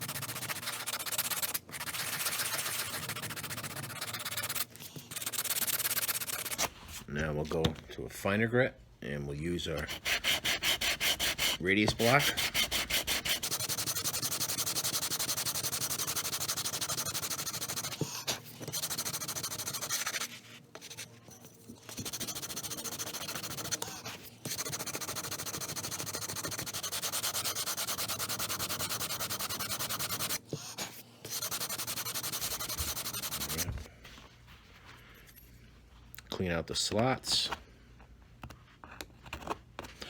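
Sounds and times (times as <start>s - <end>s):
sandpaper rubbing on wood: 0.0s - 6.6s, 9.9s - 18.0s, 18.8s - 20.3s, 22.0s - 23.8s, 24.5s - 30.4s, 31.3s - 33.7s.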